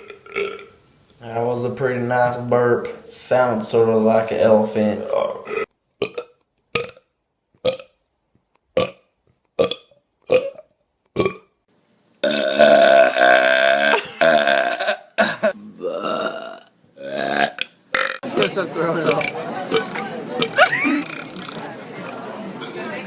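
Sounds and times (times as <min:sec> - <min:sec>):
person burping: 0:00.0 - 0:00.8, 0:05.4 - 0:08.0, 0:08.8 - 0:11.5, 0:12.2 - 0:18.3, 0:19.0 - 0:21.6.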